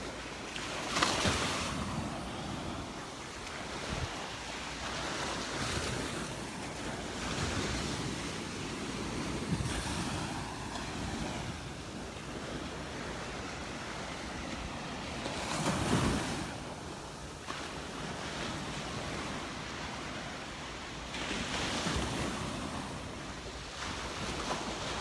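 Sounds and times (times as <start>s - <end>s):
surf washing onto beach: 0.0s - 25.0s
wind buffeting microphone: 1.2s - 4.5s, 5.2s - 14.8s.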